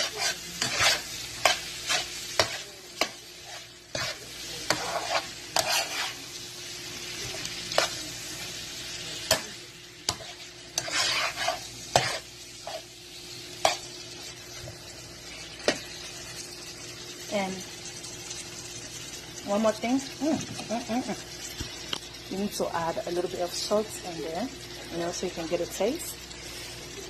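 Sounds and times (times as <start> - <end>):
utensil scraping a frying pan: 0.0 - 6.3, 10.1 - 12.9
food sizzling: 0.0 - 27.0.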